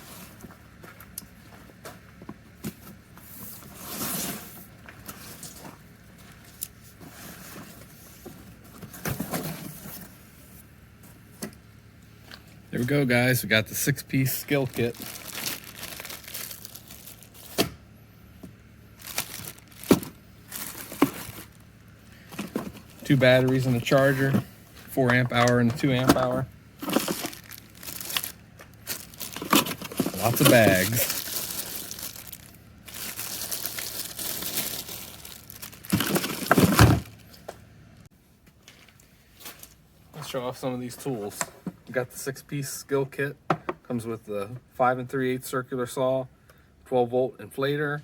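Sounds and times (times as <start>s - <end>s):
plastic packaging crinkling: 14.4s - 17.6s, 18.9s - 24.0s, 25.2s - 37.4s.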